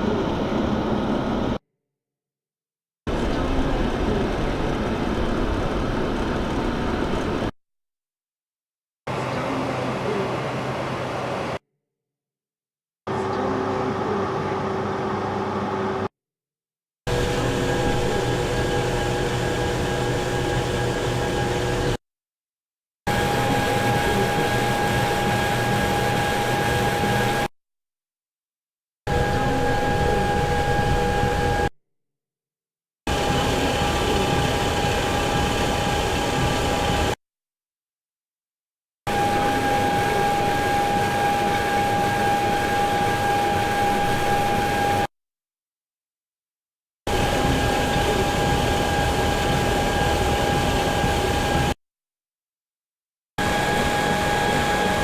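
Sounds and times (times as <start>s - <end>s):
industrial machinery hiss and hum: 17.1s - 22.0s, 33.1s - 37.2s, 47.1s - 51.7s.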